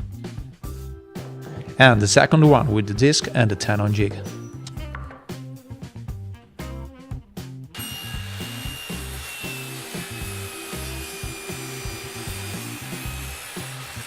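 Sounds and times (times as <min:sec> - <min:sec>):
background music with steady beat: 0:00.0 - 0:13.8
circular saw cutting wood: 0:07.7 - 0:14.0.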